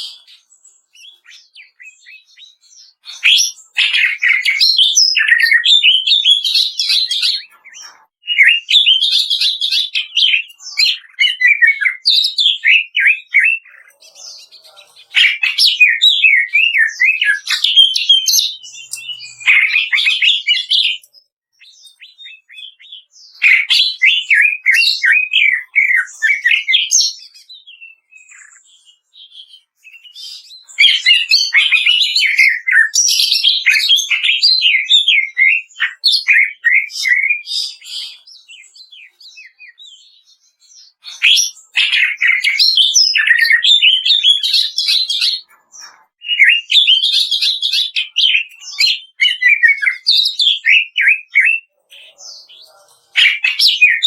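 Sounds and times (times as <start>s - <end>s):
bird singing rattling notes: 0.0s - 28.8s.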